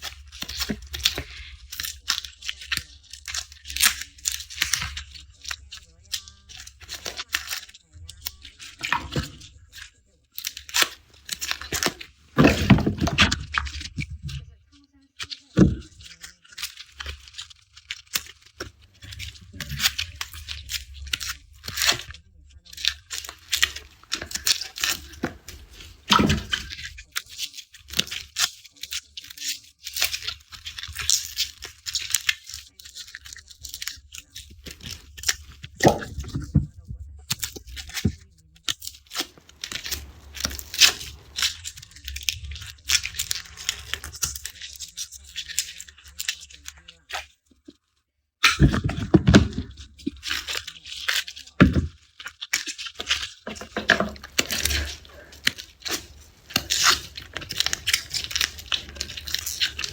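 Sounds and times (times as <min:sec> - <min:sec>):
garlic skins crackling and tearing: 0:23.1 - 0:26.8, 0:39.2 - 0:41.7, 0:52.5 - 0:59.9.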